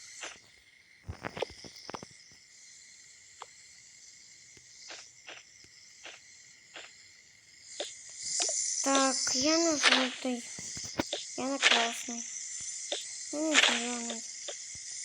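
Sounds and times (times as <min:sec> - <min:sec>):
faint hiss: 0:00.0 - 0:15.0
toys clicking and tapping: 0:07.8 - 0:12.2, 0:12.9 - 0:14.6.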